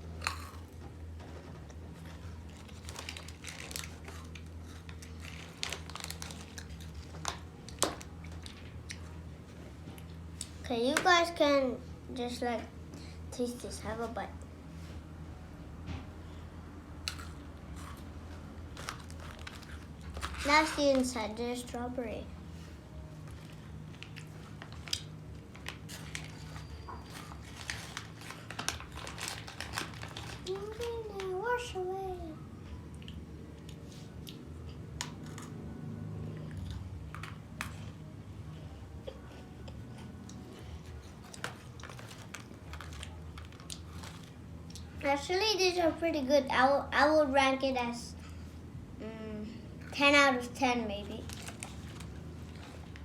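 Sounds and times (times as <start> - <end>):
steady low hum: 0.0 - 53.0
person chewing crunchy biscuit: 0.1 - 0.8, 1.9 - 7.3, 17.0 - 20.4
plastic packaging crinkling: 2.0 - 8.7, 18.7 - 21.2, 23.2 - 31.6, 40.9 - 44.9, 51.2 - 53.0.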